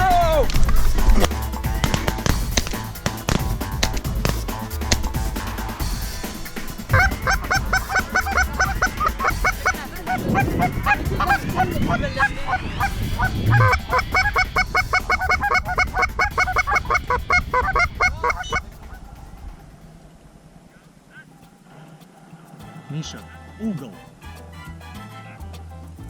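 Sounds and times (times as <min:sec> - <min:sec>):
geese honking: 0:00.0 - 0:19.5.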